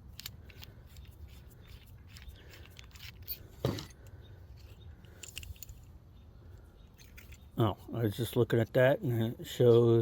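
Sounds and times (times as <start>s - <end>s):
small metal tools rattling: 0.0s - 6.0s, 6.9s - 7.6s.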